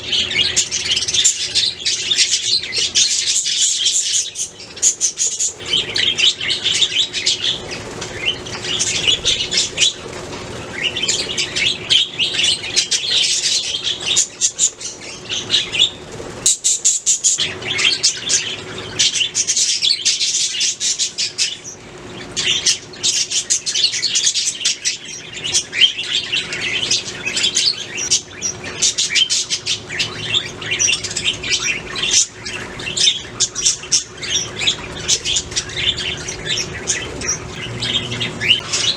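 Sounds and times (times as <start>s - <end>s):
budgerigars chirping: 0.0s - 38.9s.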